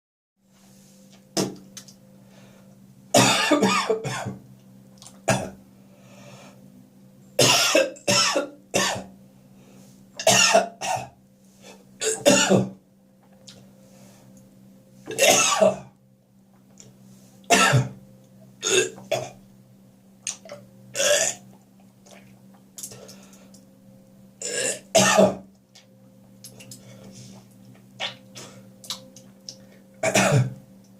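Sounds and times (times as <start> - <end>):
steady low hum: 0.4 - 30.9
person coughing and gagging: 3.2 - 4.4, 5.3 - 5.6, 7.4 - 9.1, 10.2 - 11.1, 12.0 - 12.8, 15.1 - 15.9, 17.5 - 18.0, 18.6 - 19.3, 24.4 - 25.4, 30.0 - 30.6.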